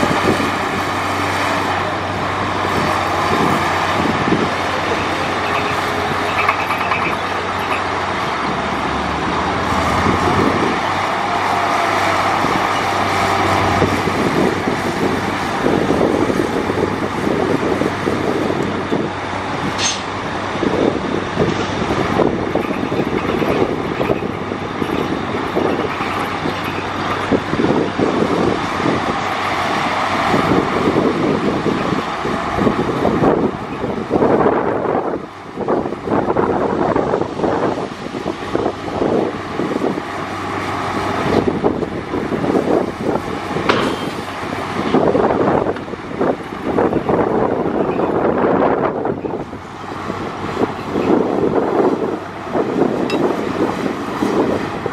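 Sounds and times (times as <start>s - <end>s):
heavy diesel machines running: 0.0s - 54.9s
metal clanking and rattling: 5.0s - 7.9s, 19.8s - 20.2s, 22.4s - 27.4s, 43.6s - 44.4s.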